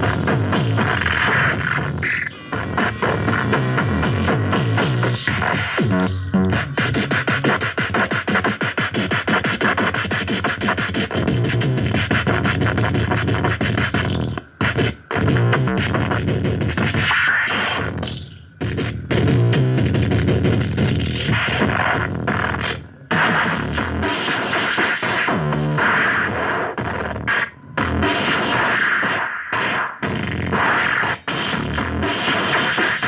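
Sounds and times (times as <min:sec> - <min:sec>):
electronic synthesizer music: 0:00.0 - 0:17.8.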